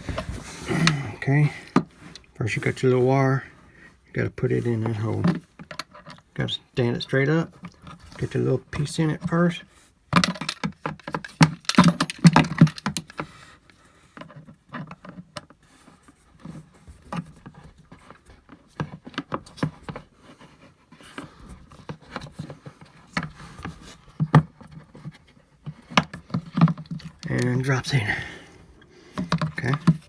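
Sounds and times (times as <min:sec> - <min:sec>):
plastic parts clicking and rattling: 0:00.0 - 0:01.9, 0:10.1 - 0:15.6, 0:21.0 - 0:30.0.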